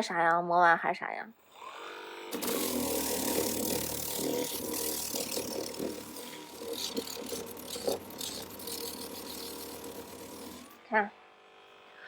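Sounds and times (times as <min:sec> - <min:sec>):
polisher motor whine: 0:02.0 - 0:11.5
polisher pad rubbing on paint: 0:02.4 - 0:10.8.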